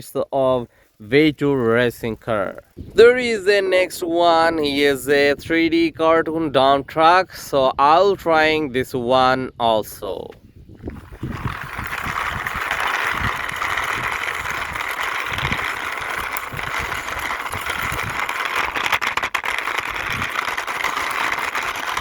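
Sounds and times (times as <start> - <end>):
toy truck wheels rattling: 10.8 - 22.0.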